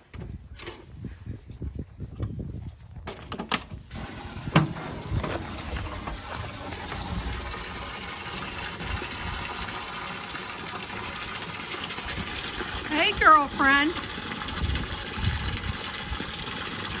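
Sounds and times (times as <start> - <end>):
water gushing into a trough: 3.9 - 17.0.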